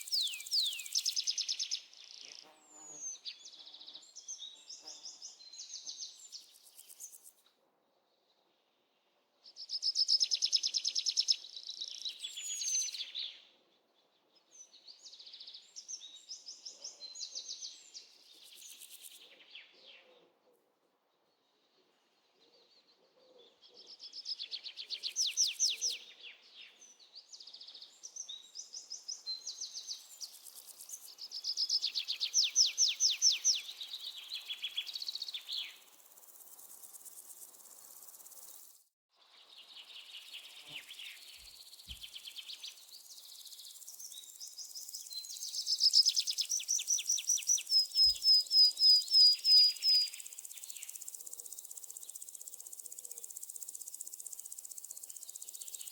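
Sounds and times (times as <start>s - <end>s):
songbird trilling: 0.0s - 1.7s, 45.1s - 50.5s
faint high insect hum: 0.0s - 7.4s, 9.6s - 13.2s, 24.7s - 26.1s, 26.7s - 55.9s.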